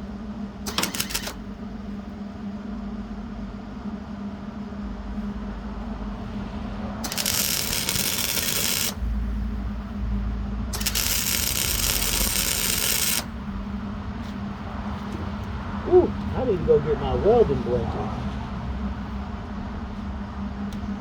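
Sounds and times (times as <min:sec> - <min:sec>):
steady low hum: 0:00.0 - 0:21.0
arc welding hiss: 0:07.0 - 0:09.2, 0:10.7 - 0:13.4.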